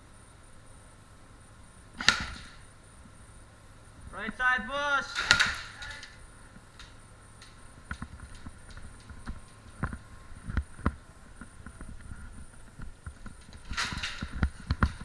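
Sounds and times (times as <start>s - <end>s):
loud thumps: 2.0s - 2.7s, 5.0s - 6.2s
footsteps: 4.1s - 15.0s.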